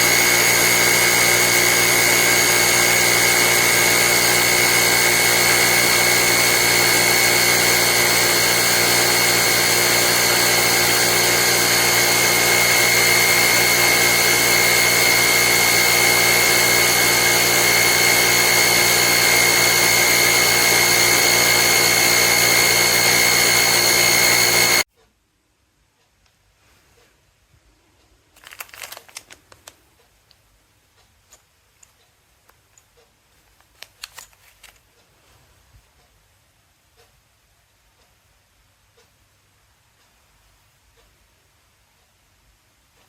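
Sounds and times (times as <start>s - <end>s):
air compressor whining: 0.0s - 24.9s.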